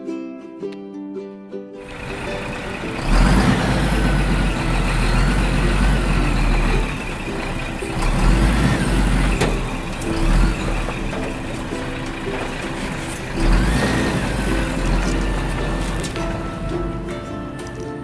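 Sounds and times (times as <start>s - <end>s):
truck engine rumble: 1.8s - 18.0s.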